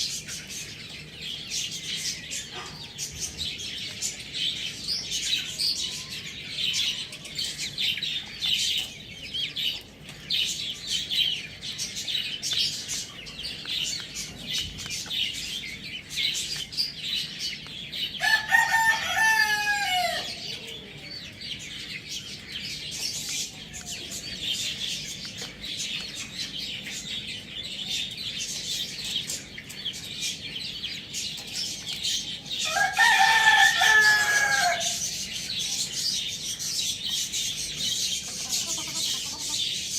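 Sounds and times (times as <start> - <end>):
small birds twittering: 0.0 - 39.9
rooster crowing: 18.2 - 20.5, 32.6 - 35.1.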